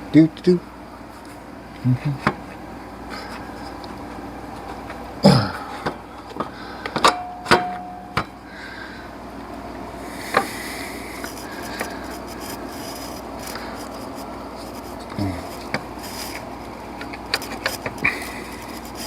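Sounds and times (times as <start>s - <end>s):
rubbing and scraping: 11.1s - 16.5s.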